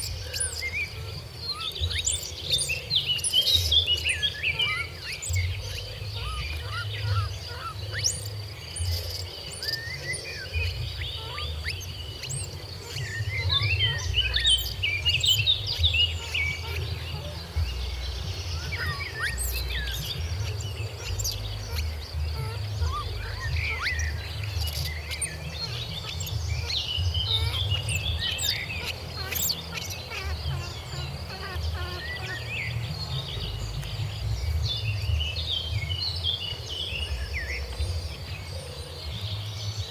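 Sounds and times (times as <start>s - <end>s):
high-pitched insect drone: 0.0s - 34.9s
short high chirping calls: 18.6s - 32.4s
low rumble: 32.4s - 39.9s.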